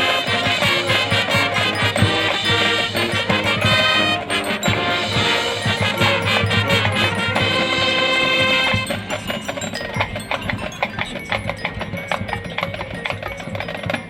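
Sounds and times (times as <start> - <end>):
marching band sustained chords: 0.0 - 10.9
mallet percussion notes: 0.0 - 14.0.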